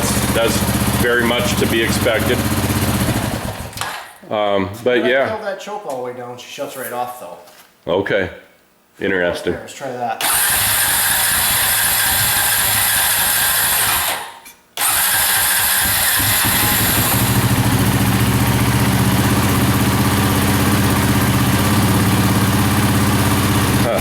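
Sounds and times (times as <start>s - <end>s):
engine running and idling: 0.0s - 3.7s, 14.8s - 24.0s.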